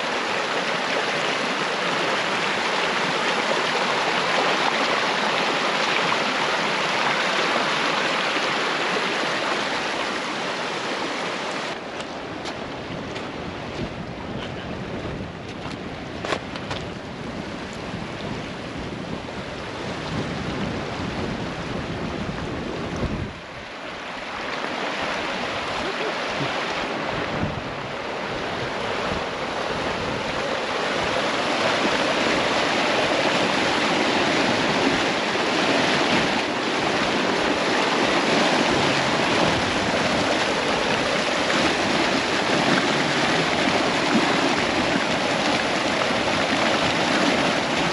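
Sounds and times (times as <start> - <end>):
rushing floodwater: 0.0 - 47.9
wind buffeting microphone: 11.8 - 47.9.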